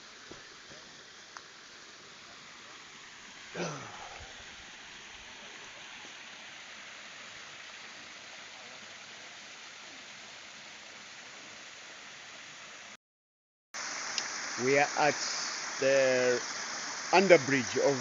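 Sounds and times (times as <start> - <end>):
river rushing: 13.8 - 18.0.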